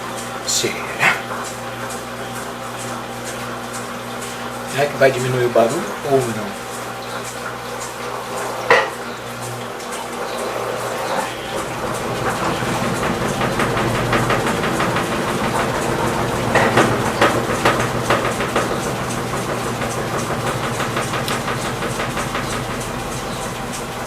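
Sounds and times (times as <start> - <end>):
washing machine motor hum: 0.0 - 24.0
fast rattling from cabinet: 10.8 - 24.0
louder knocks: 11.6 - 23.2.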